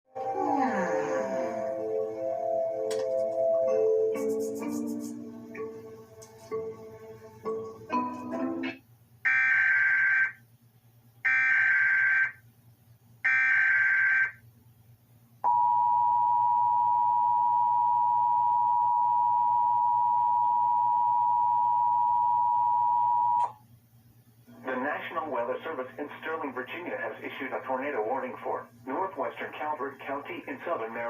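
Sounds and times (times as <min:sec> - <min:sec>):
two-tone attention signal: 0:15.5 - 0:23.5.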